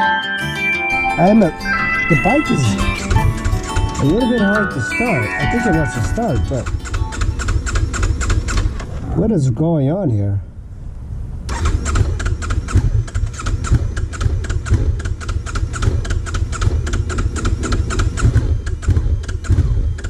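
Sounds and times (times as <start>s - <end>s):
motorcycle starter cranking engine: 11.5s - 20.0s.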